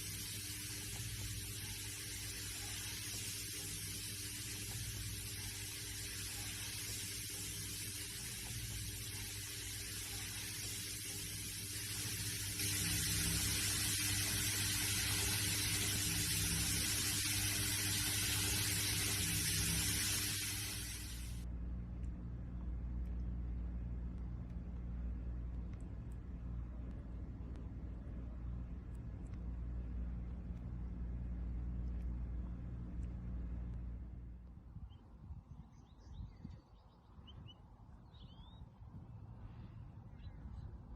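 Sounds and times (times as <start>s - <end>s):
steady hissing: 0.0s - 21.4s
low hum: 0.0s - 40.9s.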